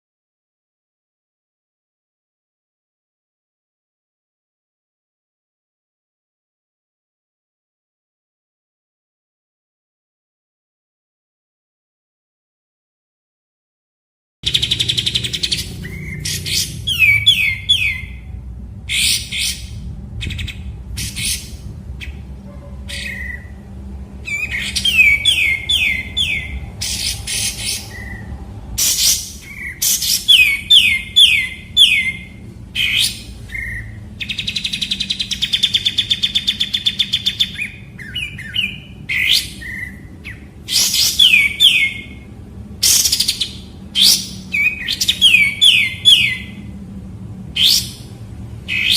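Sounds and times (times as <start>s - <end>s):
bulbul singing: 14.4s - 46.8s, 47.5s - 48.9s.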